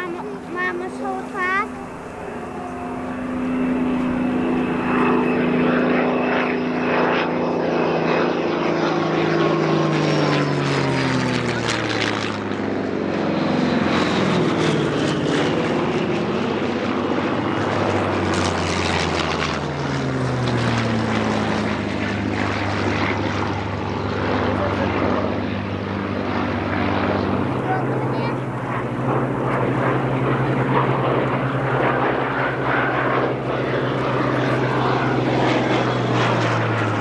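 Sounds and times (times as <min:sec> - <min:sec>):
propeller plane flying past: 0:00.0 - 0:37.0.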